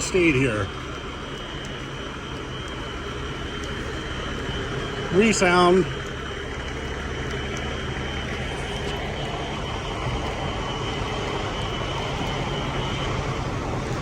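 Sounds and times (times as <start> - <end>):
engine idling: 0.0 - 14.0
fire alarm horns: 7.8 - 14.0.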